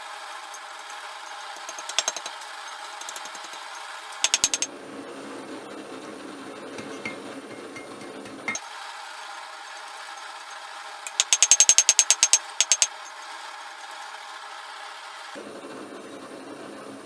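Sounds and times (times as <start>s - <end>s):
gas forge hissing: 0.0s - 4.7s, 8.5s - 15.4s
light hammer taps on steel: 3.0s - 4.7s, 11.1s - 13.2s.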